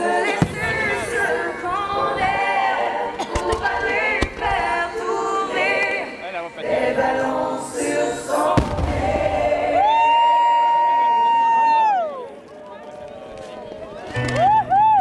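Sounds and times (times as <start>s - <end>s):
choir music: 0.0s - 10.1s
firework bang: 0.3s - 1.0s, 8.6s - 9.6s.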